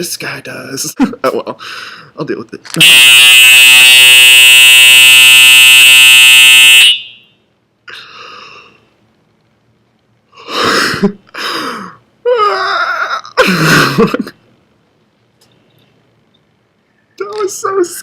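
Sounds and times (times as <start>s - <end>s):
fire alarm tone: 2.8s - 7.4s.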